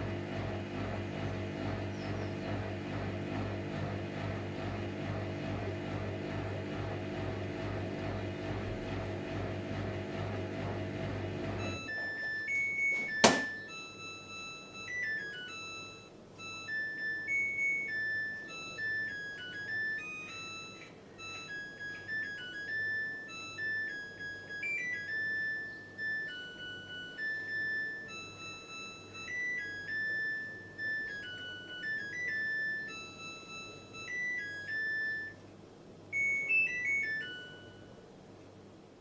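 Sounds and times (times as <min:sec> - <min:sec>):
washing machine drum humming: 0:00.0 - 0:15.6
electronic buzzer beeping tune: 0:11.6 - 0:35.4, 0:36.2 - 0:37.9.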